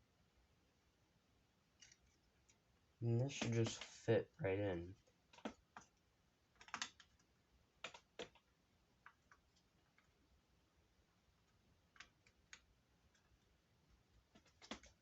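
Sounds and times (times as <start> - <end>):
faint small clicks and taps: 5.0 - 10.2, 11.4 - 13.5.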